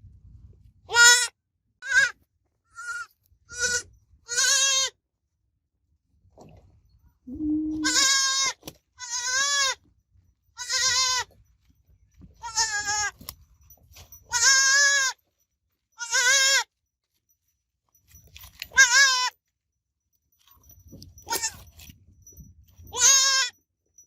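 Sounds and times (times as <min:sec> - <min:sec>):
goat kid bleating: 0:00.9 - 0:05.0, 0:07.3 - 0:09.8, 0:10.6 - 0:11.3, 0:12.4 - 0:13.2, 0:14.3 - 0:15.2, 0:16.0 - 0:16.7, 0:18.7 - 0:19.4, 0:22.9 - 0:23.5.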